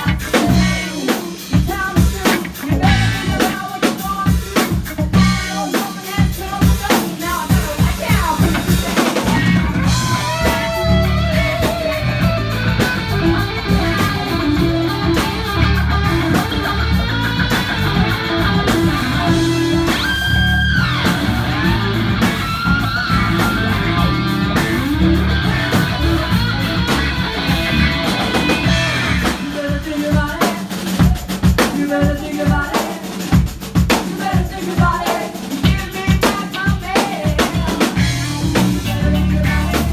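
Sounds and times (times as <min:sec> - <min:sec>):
rock band playing live: 0:00.0 - 0:39.9
lead guitar melody: 0:09.5 - 0:29.2.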